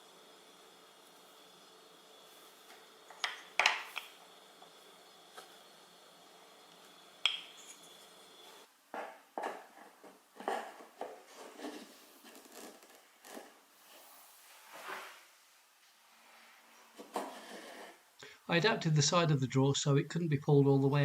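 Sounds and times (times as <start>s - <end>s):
objects rubbing scraping and knocking: 9.5s - 15.3s, 16.4s - 18.1s.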